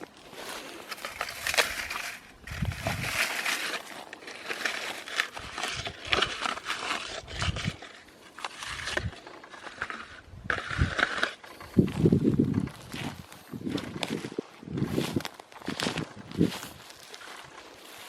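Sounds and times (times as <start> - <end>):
plastic trash crinkling: 0.3 - 9.4
wind buffeting microphone: 2.4 - 3.2, 10.3 - 11.0, 11.6 - 16.8.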